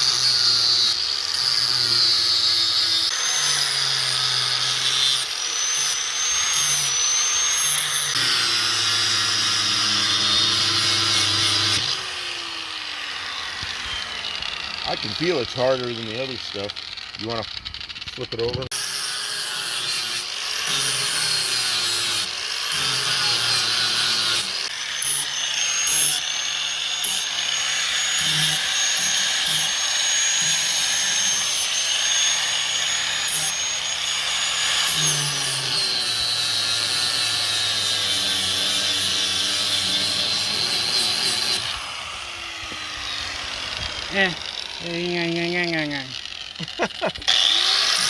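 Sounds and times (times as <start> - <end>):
electric power tool whining: 0.0 - 48.0.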